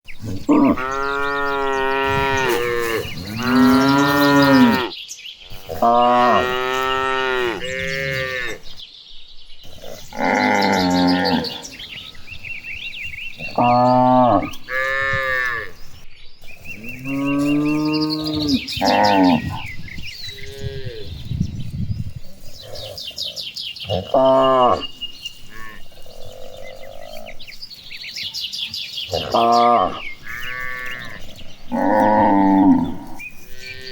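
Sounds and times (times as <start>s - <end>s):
cattle mooing: 0.2s - 4.9s, 5.7s - 8.6s, 9.7s - 11.8s, 29.1s - 33.9s.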